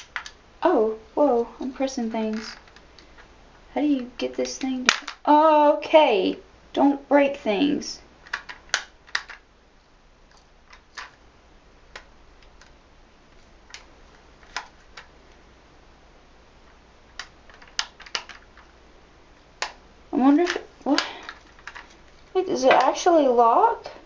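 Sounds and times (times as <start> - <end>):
plastic tool clicking: 17.2 - 18.6.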